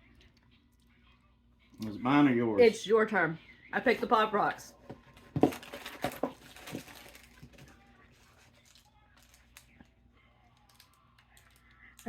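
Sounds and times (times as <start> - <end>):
snack packaging crinkling: 5.1 - 12.0.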